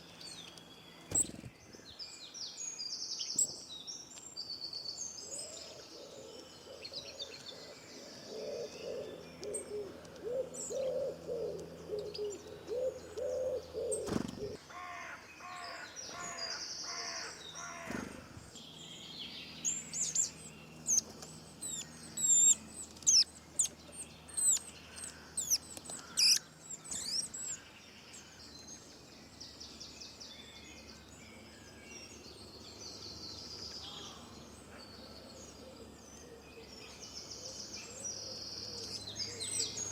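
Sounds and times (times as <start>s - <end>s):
low cooing or hooting bird: 5.3s - 14.6s, 33.8s - 39.9s
high falling bird chirps: 19.5s - 27.6s
harsh bird calls: 19.5s - 28.4s.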